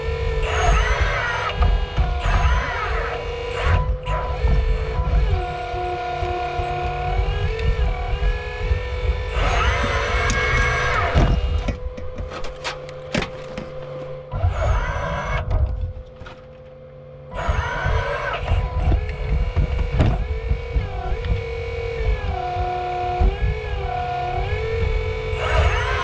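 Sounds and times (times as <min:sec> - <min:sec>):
electric motor tone: 0:00.0 - 0:16.5, 0:17.2 - 0:26.0
hydraulic pump whining: 0:00.0 - 0:26.0
digging clicks and knocks: 0:09.3 - 0:16.8.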